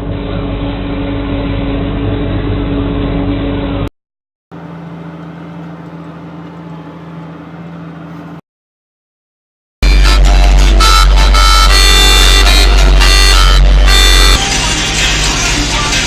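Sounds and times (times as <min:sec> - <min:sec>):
tractor engine running: 0:09.8 - 0:16.0.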